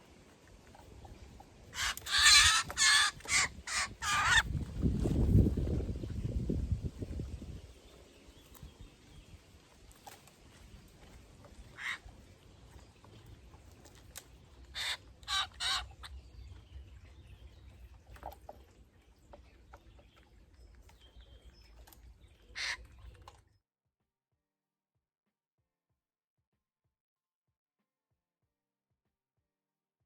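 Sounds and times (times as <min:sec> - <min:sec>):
jays screeching: 0:01.8 - 0:04.4.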